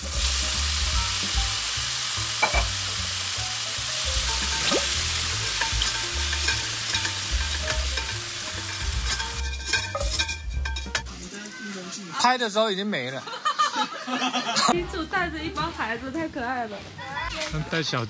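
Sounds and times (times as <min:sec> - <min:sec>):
sausages sizzling in a frying pan: 0:00.0 - 0:12.7.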